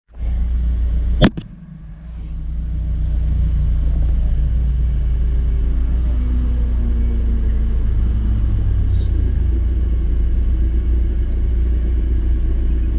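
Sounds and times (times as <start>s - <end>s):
car engine rumbling: 0.1s - 12.9s
sharp double click: 1.2s - 1.6s.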